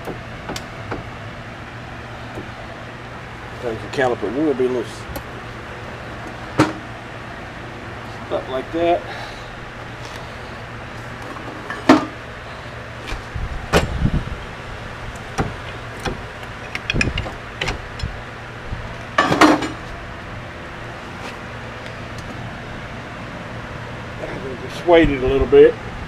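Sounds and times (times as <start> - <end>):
steady low hum: 0.0 - 26.0
brake caliper and tools clanking: 10.9 - 14.0, 15.0 - 18.3, 19.1 - 20.0.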